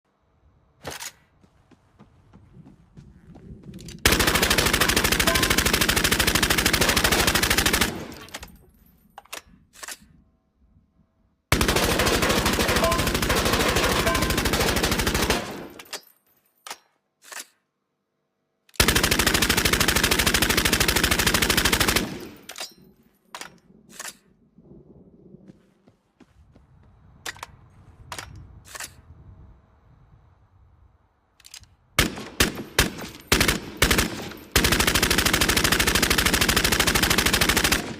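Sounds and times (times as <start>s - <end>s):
submachine gun automatic fire: 4.0s - 8.3s, 11.5s - 15.8s, 18.8s - 22.4s, 32.0s - 37.9s.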